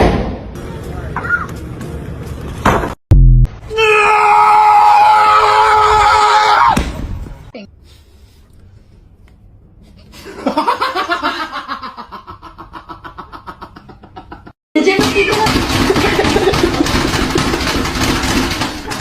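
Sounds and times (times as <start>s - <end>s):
loud held cry: 3.7s - 6.8s
person laughing in rapid bursts: 10.2s - 14.6s, 15.7s - 17.7s.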